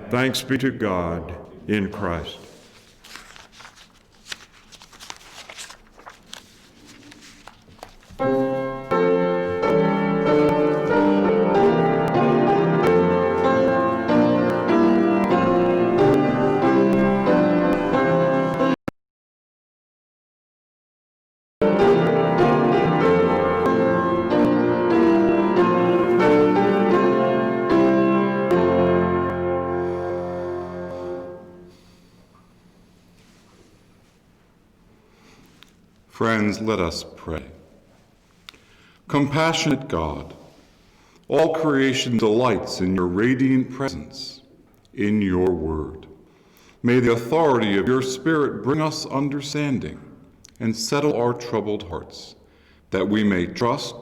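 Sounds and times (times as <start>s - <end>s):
faint clicks and rustles: 2.7s - 8.5s
piano playing sustained chords: 8.2s - 18.8s, 21.6s - 32.2s.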